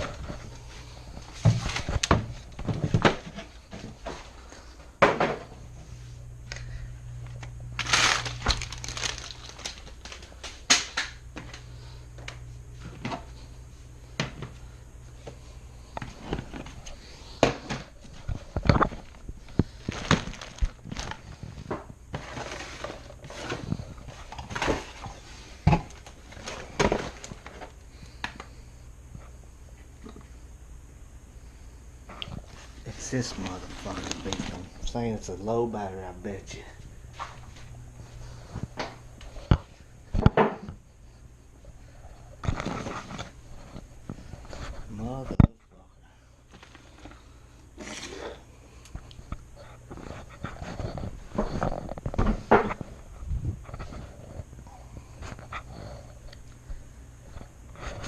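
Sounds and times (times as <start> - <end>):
crinkling: 7.4 - 11.6, 18.0 - 27.8, 32.2 - 35.1, 42.4 - 44.8, 46.5 - 49.3.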